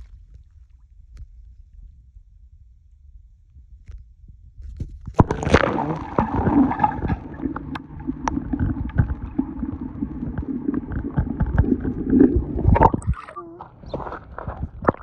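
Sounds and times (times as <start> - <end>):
water gurgling and sloshing: 5.1 - 15.0.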